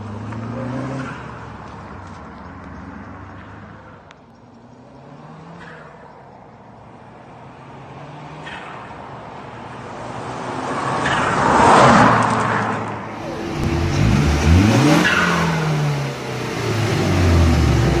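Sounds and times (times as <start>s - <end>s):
car engine accelerating hard: 0.0s - 2.2s, 11.0s - 18.0s.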